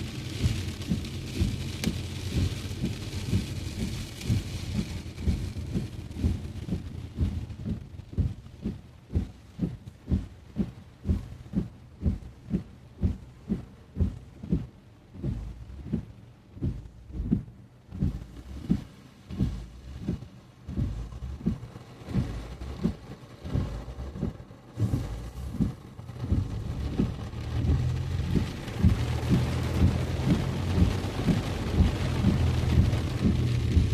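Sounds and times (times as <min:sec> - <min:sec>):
car driving on wet road: 0:00.0 - 0:33.9
heavy rain: 0:00.0 - 0:33.9
windshield wipers thumping: 0:00.0 - 0:33.9.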